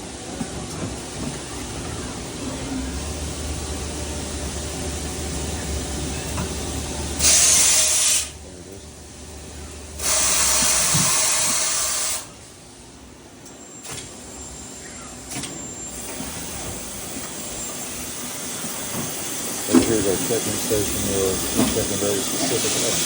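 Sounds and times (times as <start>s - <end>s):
compressed air hissing: 7.2s - 8.4s, 10.0s - 12.3s, 16.2s - 23.0s
lathe machine hum: 15.6s - 23.0s.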